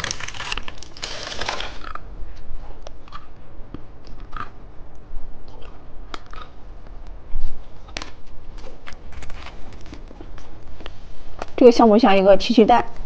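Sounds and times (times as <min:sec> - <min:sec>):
plastic candy packaging crinkling: 0:00.0 - 0:02.0.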